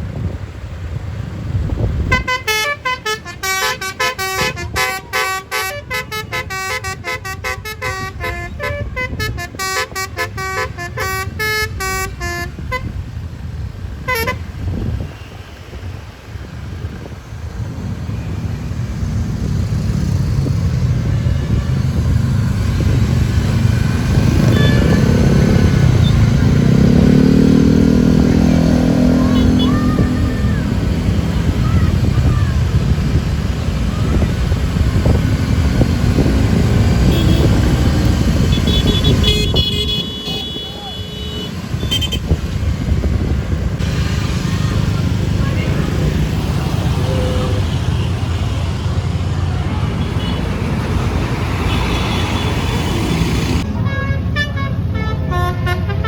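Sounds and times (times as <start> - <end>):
bus engine rumble: 0.0 - 56.0
multi-tone bus horn tune: 2.0 - 13.0, 14.0 - 14.6, 24.3 - 30.5, 36.2 - 42.4, 51.7 - 56.0.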